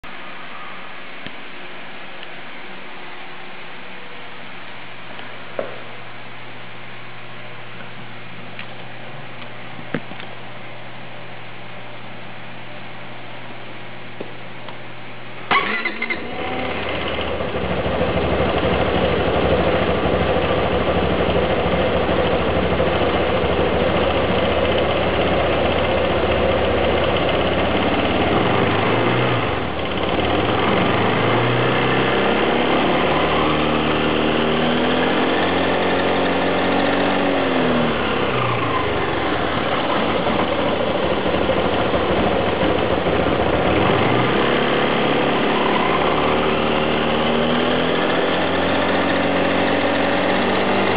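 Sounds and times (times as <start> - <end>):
scooter engine idling and revving: 15.5 - 50.9.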